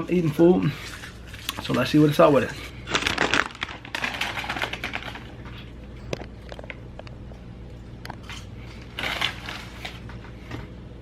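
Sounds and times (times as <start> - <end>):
steady low hum: 0.0 - 11.0
paper packaging rustling: 0.2 - 5.6, 8.2 - 10.4.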